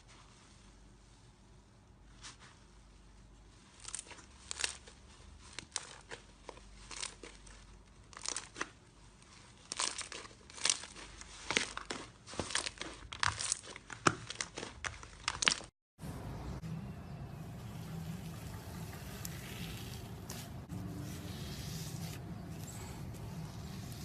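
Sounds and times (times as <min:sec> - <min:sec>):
slime crackling and popping: 0:09.6 - 0:15.7.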